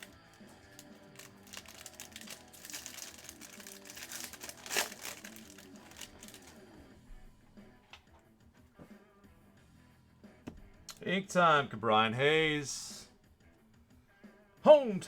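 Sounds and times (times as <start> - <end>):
plastic wrapper crinkling: 0.0 - 6.6
quiet background music: 0.0 - 15.0.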